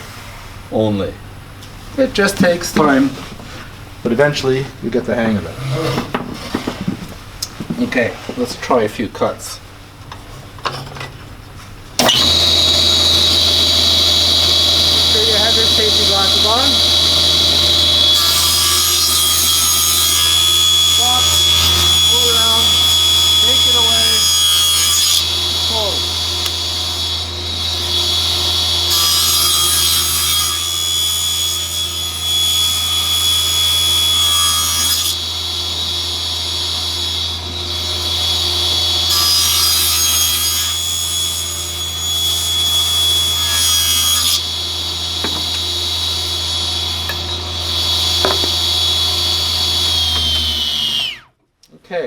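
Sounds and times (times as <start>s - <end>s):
saw blade rasping through wood: 12.0s - 51.2s
table saw motor whine: 12.0s - 51.3s.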